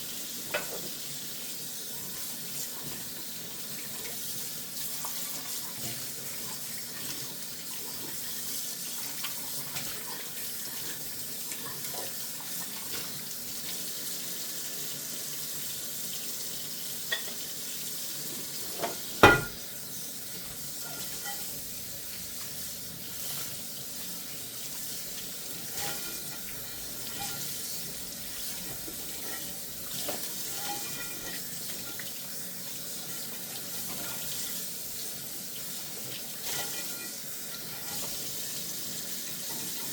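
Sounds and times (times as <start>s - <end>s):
tap water running into sink: 0.0s - 39.9s
dishes clinking: 18.7s - 19.6s, 20.8s - 21.5s, 30.1s - 32.0s
dish knocking against sink: 18.8s - 19.6s.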